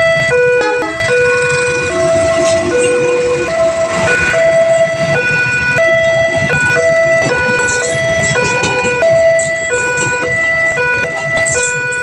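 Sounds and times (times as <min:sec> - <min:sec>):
level crossing alarm two-tone siren: 0:00.0 - 0:12.0
low rumble: 0:01.0 - 0:09.6.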